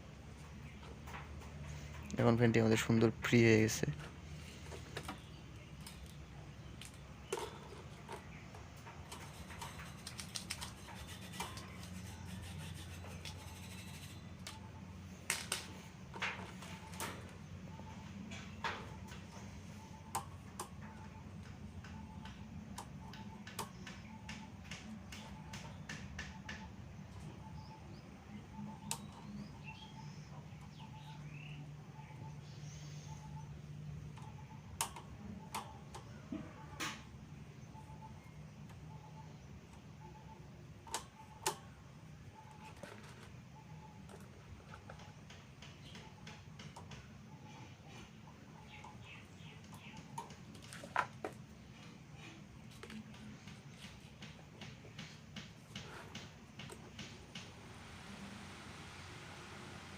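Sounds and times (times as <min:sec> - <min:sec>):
birds chirping: 0:00.0 - 0:59.9
steady low hum: 0:00.0 - 0:59.9
table fan being handled: 0:04.0 - 0:17.4.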